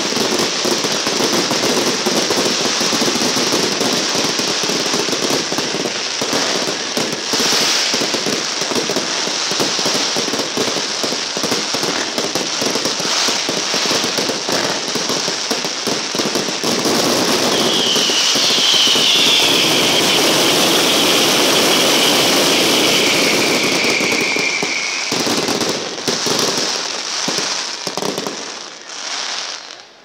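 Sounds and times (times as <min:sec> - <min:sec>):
fireworks crackling bangs: 0:00.0 - 0:29.9
high falling whistle: 0:17.4 - 0:25.6.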